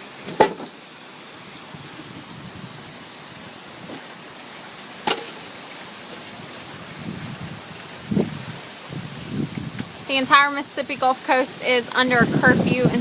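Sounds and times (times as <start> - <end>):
heavy rain and wind: 0.0 - 13.0.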